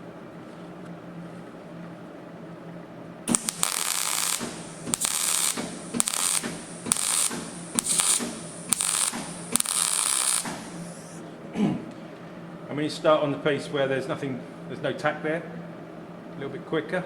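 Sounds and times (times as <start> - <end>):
welding arc crackling: 3.3 - 11.2.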